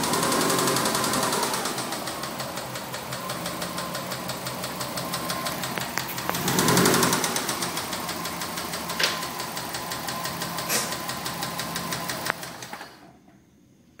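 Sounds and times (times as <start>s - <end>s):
engine with rod knock: 8.6s - 9.4s.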